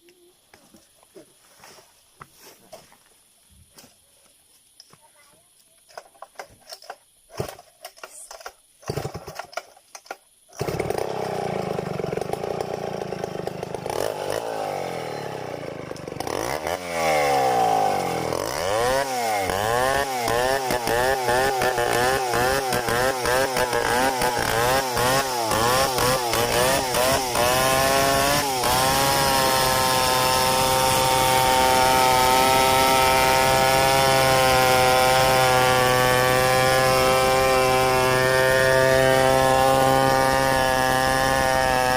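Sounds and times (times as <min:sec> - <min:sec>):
chainsaw revving: 0:08.8 - 0:09.5, 0:10.5 - 0:41.9.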